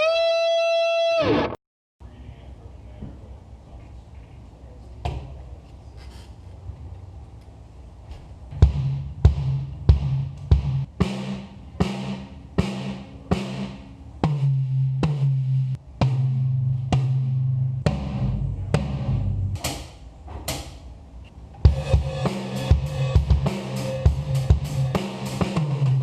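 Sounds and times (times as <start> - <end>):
drum hits: 8.5 - 20.8, 21.6 - 26.0
cymbal strikes: 8.6 - 17.3, 21.7 - 26.0.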